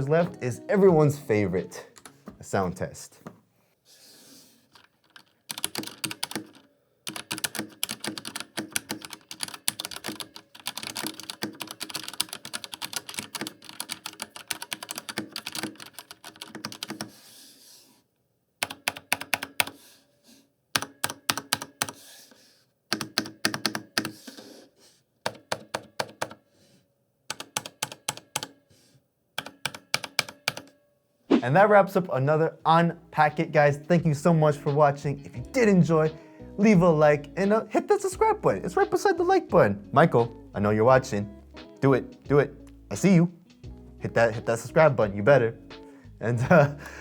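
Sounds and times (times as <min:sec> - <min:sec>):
typing on mechanical keyboard: 0:04.7 - 0:17.2, 0:18.6 - 0:19.8, 0:20.8 - 0:22.0, 0:22.9 - 0:24.4, 0:25.2 - 0:26.4, 0:27.3 - 0:28.6, 0:29.4 - 0:30.8.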